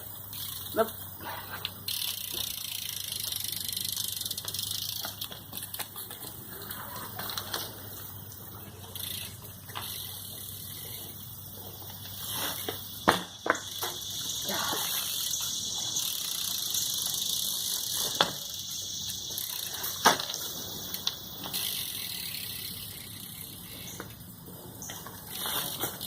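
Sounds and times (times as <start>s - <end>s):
bike tyres hissing: 0.0s - 26.0s
bike knocking on ground: 11.7s - 15.5s, 17.7s - 18.6s, 19.3s - 21.9s.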